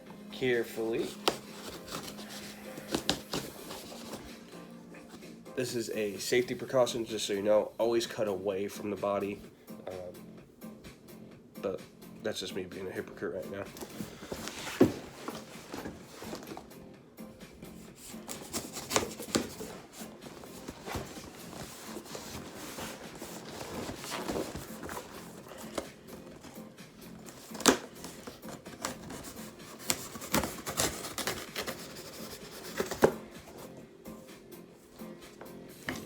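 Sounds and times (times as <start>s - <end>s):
knife cutting tape and cardboard: 18.0s - 19.8s, 27.3s - 33.2s.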